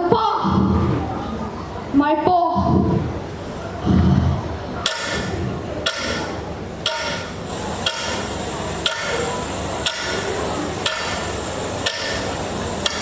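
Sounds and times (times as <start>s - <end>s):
steady hiss: 2.7s - 13.0s
sharp knocks: 3.8s - 8.2s, 9.8s - 13.0s.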